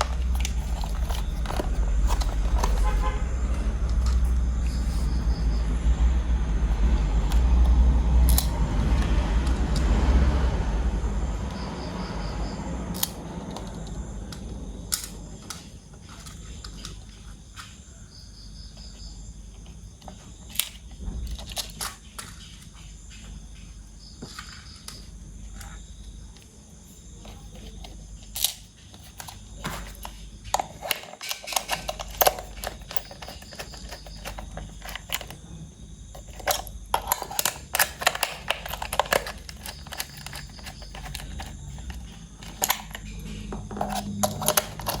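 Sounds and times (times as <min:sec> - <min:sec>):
handling plastic toy parts: 0:00.0 - 0:05.7, 0:19.6 - 0:22.8, 0:24.2 - 0:45.0.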